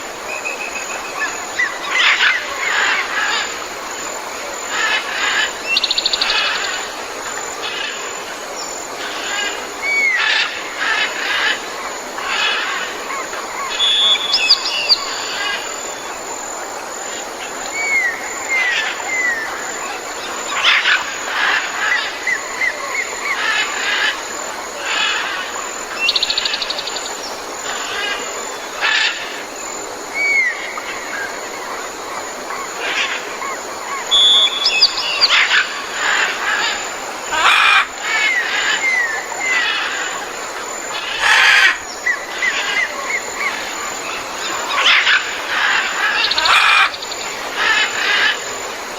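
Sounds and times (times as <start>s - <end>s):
birds calling: 0.0s - 48.7s
steady background hiss: 0.0s - 48.9s
bird trill: 32.5s - 40.2s.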